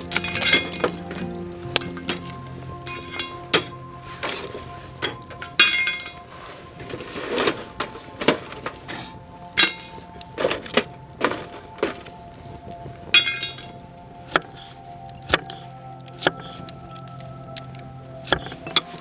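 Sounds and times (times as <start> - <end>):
soft background music: 0.0 - 19.0
wood being chopped: 14.3 - 16.6, 18.2 - 19.0.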